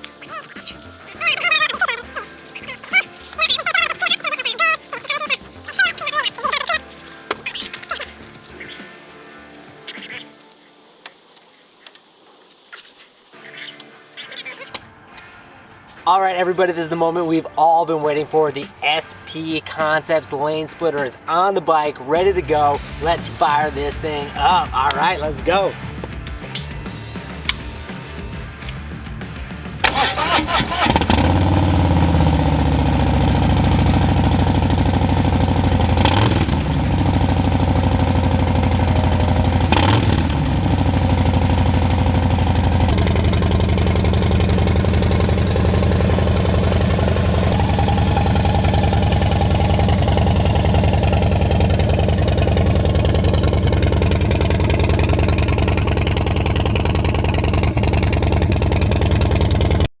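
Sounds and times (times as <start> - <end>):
motorcycle engine idling and revving: 24.0 - 59.9.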